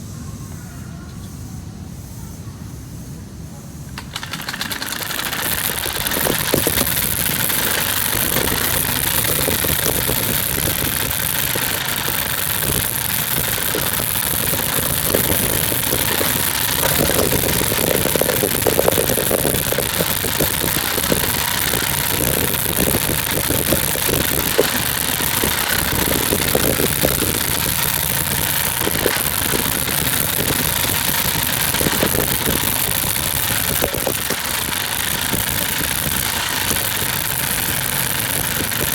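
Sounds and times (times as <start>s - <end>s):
scooter engine idling: 4.0s - 18.4s.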